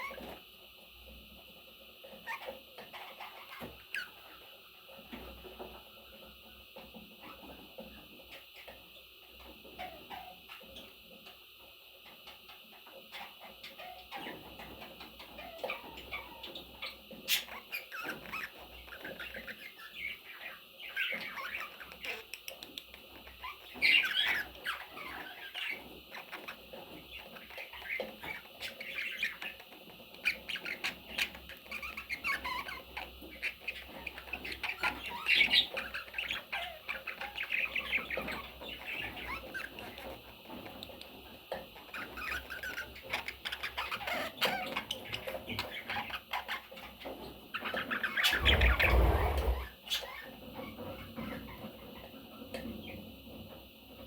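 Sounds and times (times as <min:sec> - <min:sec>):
parrots chattering and squawking: 0:02.2 - 0:04.4, 0:12.0 - 0:40.9, 0:41.8 - 0:52.1.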